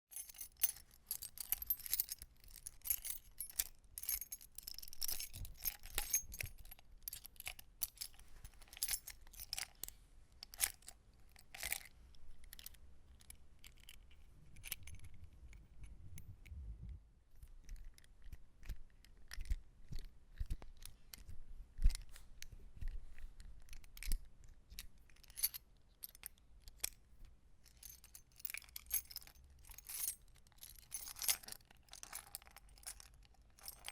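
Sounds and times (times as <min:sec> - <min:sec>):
metal keys jangling: 0:00.1 - 0:09.9, 0:27.7 - 0:33.9
soft handling noise: 0:00.2 - 0:25.6.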